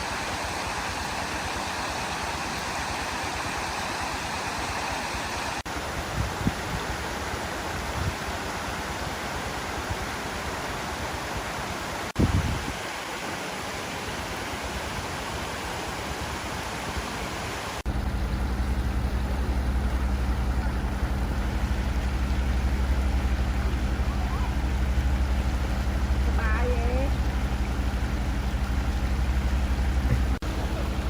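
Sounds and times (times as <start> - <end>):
waterfall rushing: 0.0 - 17.9
low steady hum: 17.9 - 31.0.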